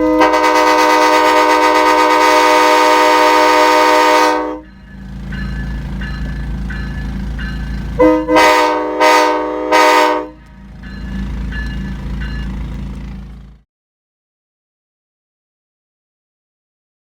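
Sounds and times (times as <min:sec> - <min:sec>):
air horn blowing a chord: 0:00.0 - 0:04.7, 0:08.0 - 0:10.6.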